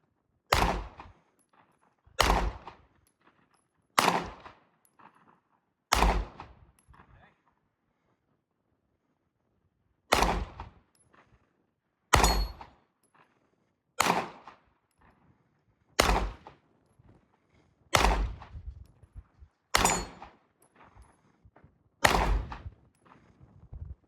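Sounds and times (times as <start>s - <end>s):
pistol shots with echo: 0.5s - 1.0s, 2.2s - 2.8s, 4.0s - 4.6s, 5.9s - 6.6s, 10.1s - 10.7s, 12.1s - 12.7s, 14.0s - 14.5s, 16.0s - 16.5s, 17.9s - 18.5s, 19.7s - 20.4s, 22.0s - 22.6s.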